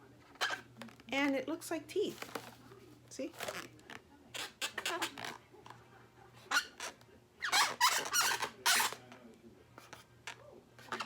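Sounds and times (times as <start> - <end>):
rubbed balloons squeaking: 0.3 - 1.0, 3.4 - 5.4, 6.4 - 9.1, 10.8 - 11.0.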